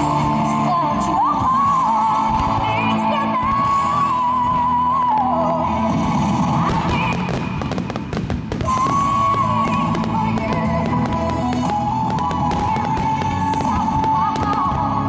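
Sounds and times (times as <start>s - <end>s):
slow melodic music: 0.0s - 15.0s
fireworks bursting and crackling: 6.2s - 15.0s.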